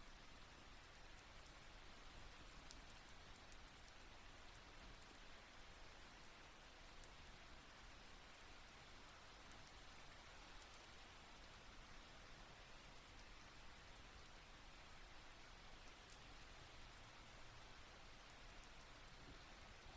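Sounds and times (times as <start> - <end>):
light rain hiss: 0.0 - 19.9
raindrop ticks: 0.2 - 7.4, 8.2 - 11.7, 18.1 - 19.9.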